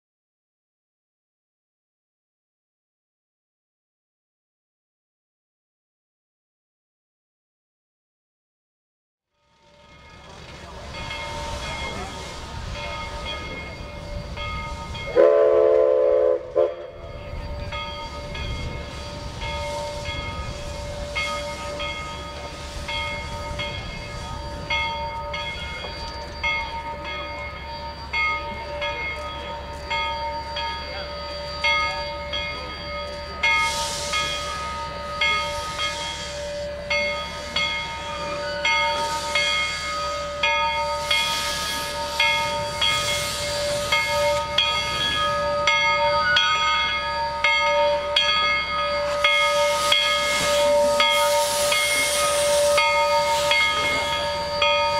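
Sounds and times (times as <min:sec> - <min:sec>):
steam hissing: 0:10.2 - 0:54.9
steam whistle blast: 0:15.1 - 0:17.1, 0:49.0 - 0:54.9.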